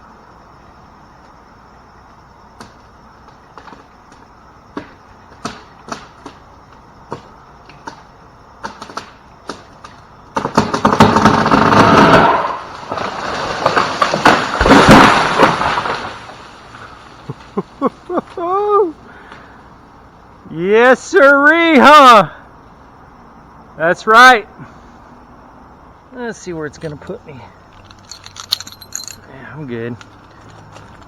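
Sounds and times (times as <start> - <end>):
wood cracking: 7.1 - 18.4, 27.6 - 29.3, 29.9 - 31.0
tree limb breaking and crashing: 10.4 - 17.6.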